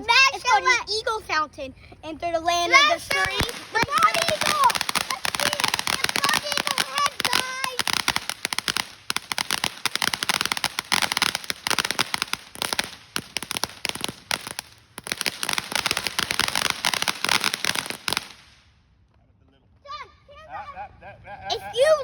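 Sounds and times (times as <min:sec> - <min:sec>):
firework fountain crackling: 0:02.5 - 0:18.8, 0:21.5 - 0:22.0.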